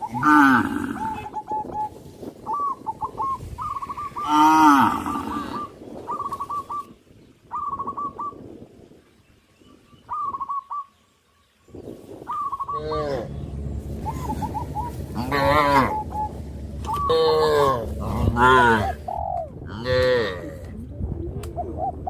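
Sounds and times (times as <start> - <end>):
birds trilling: 0.0 - 8.6, 9.6 - 20.1
cow mooing: 15.1 - 16.1, 16.8 - 19.0.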